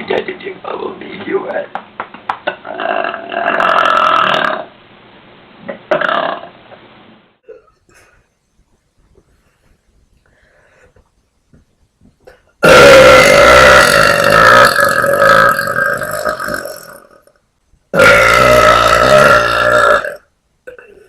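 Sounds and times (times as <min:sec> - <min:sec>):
woman burping loudly: 0:02.5 - 0:04.7, 0:05.7 - 0:06.5, 0:12.6 - 0:17.3, 0:17.9 - 0:21.0.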